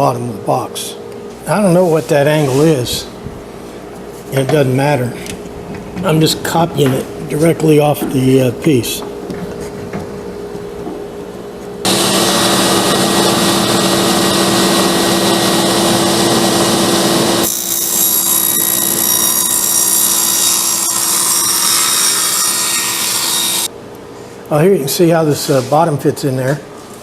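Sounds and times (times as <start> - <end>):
power saw cutting wood: 11.8 - 23.7.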